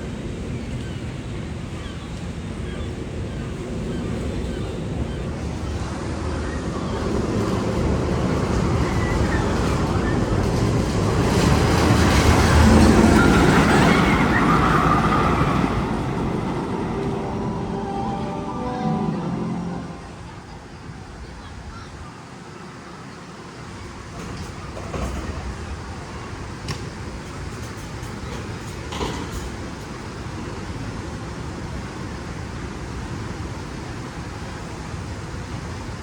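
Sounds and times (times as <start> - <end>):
rushing rumbling roar: 11.0 - 20.7.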